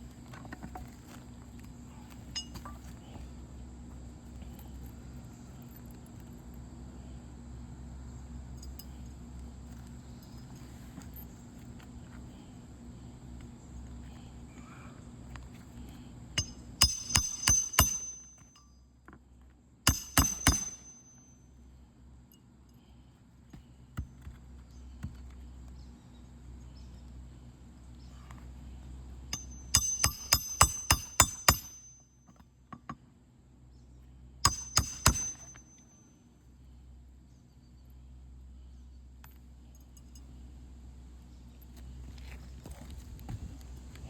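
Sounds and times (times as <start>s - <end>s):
hammer striking nails: 16.4s - 18.4s, 19.9s - 21.1s, 29.3s - 33.0s, 34.4s - 35.7s.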